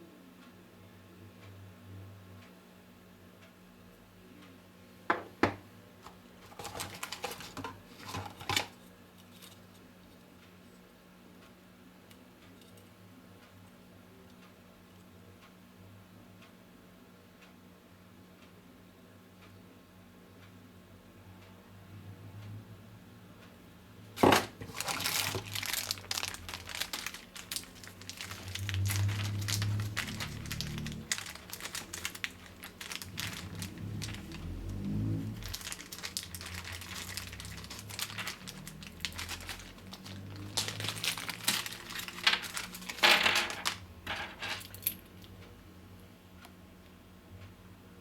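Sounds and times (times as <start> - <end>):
low steady hum: 3.4 - 48.0
phone packaging clatter and rustling: 5.2 - 9.8, 24.2 - 45.0.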